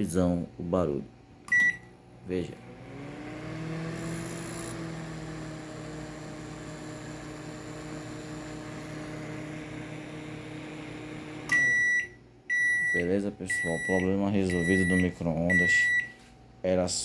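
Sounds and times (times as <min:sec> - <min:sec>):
microwave oven humming: 0:00.1 - 0:17.0.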